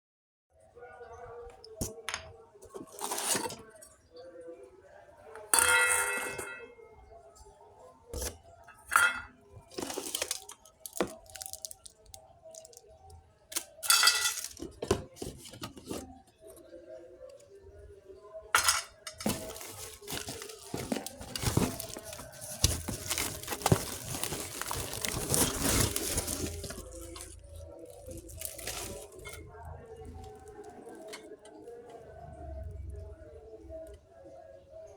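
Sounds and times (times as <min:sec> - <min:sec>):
plastic packaging crinkling: 0:08.9 - 0:12.8, 0:13.5 - 0:15.6, 0:19.1 - 0:29.4.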